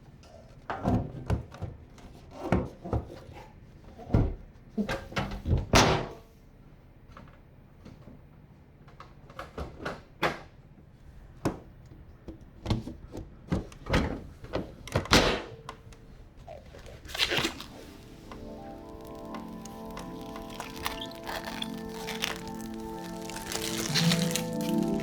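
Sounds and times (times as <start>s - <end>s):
background music: 17.3s - 25.0s.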